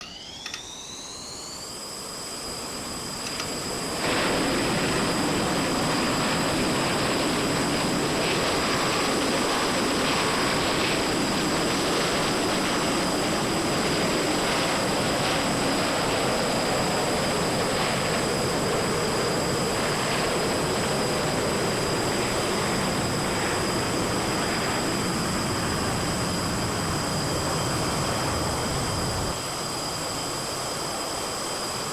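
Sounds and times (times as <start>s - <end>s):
engine starting and running: 0.0s - 1.8s, 3.2s - 4.3s
high whine: 0.0s - 2.1s.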